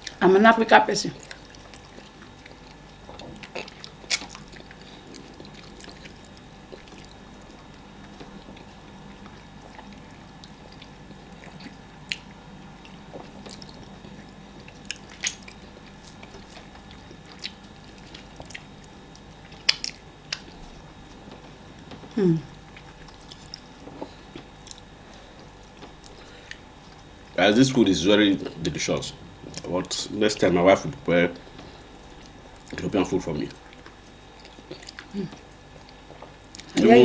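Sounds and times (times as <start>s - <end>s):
soft chewing and squishing: 1.1s - 27.4s, 28.3s - 37.0s
sharp mouth clicks: 19.6s - 20.5s.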